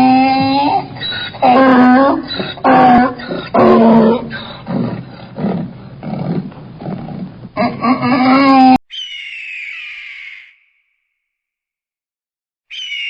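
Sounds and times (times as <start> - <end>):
animal calls: 0.0 - 10.6, 12.7 - 13.0
high falling squawk: 8.2 - 10.8, 12.7 - 13.0.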